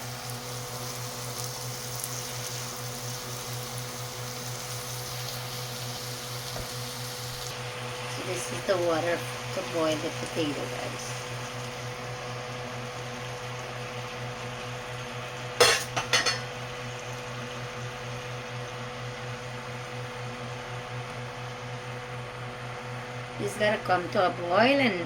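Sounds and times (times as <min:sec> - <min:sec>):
steady kitchen hum: 0:00.0 - 0:25.0
pots and utensils clattering: 0:15.6 - 0:16.6.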